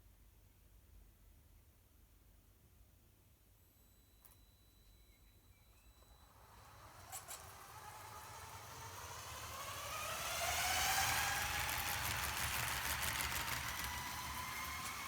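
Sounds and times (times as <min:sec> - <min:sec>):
toy train motor whining: 0:06.0 - 0:15.0
train wheels clicking on track: 0:06.4 - 0:15.0.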